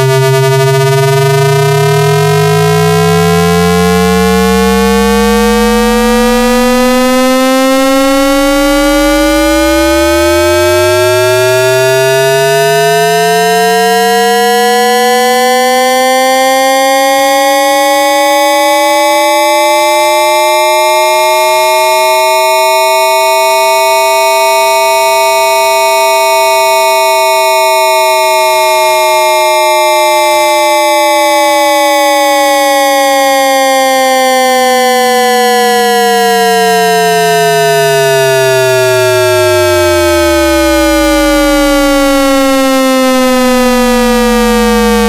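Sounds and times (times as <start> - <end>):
low tone hum: 0.0 - 13.4, 37.8 - 45.0.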